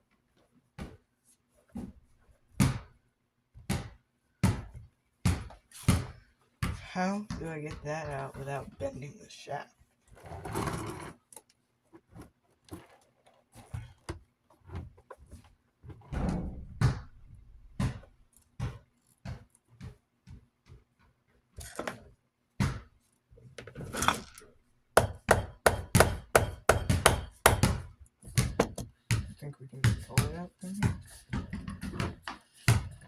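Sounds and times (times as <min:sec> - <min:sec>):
tools and metal parts knocking: 0:23.9 - 0:27.8, 0:28.5 - 0:28.9.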